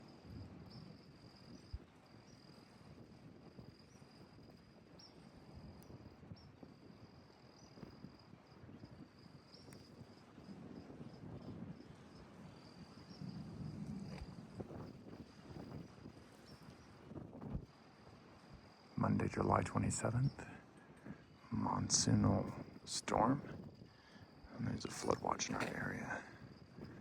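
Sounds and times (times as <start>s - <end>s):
high-pitched insect trill: 0.0s - 27.0s
low rumbling background: 24.5s - 26.3s.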